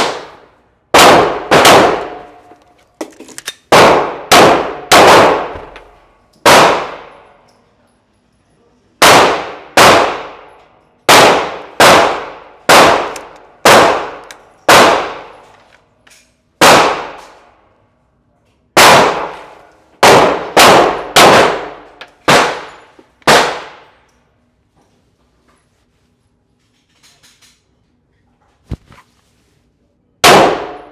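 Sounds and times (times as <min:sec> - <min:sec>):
pistol shots echoing: 0:00.0 - 0:02.5, 0:03.7 - 0:07.3, 0:09.0 - 0:10.5, 0:11.1 - 0:15.4, 0:16.6 - 0:17.4, 0:18.8 - 0:23.9, 0:30.2 - 0:30.9.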